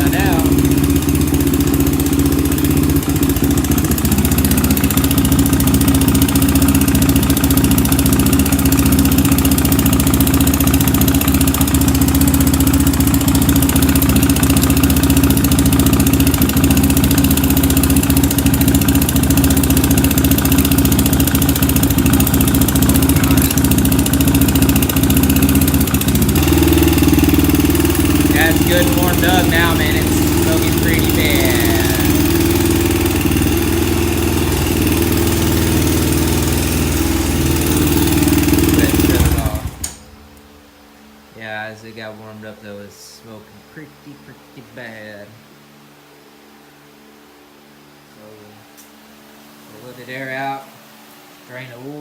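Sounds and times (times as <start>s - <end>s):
engine idling: 0.0s - 41.2s.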